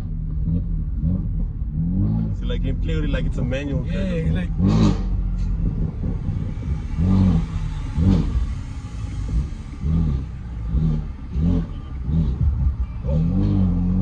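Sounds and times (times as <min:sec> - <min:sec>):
car engine revving: 0:00.0 - 0:14.0.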